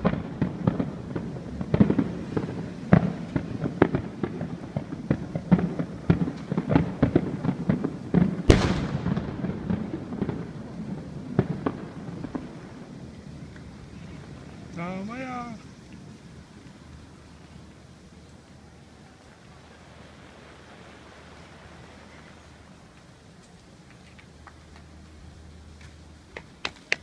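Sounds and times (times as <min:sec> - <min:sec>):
fireworks bangs and crackles: 0:00.0 - 0:16.2.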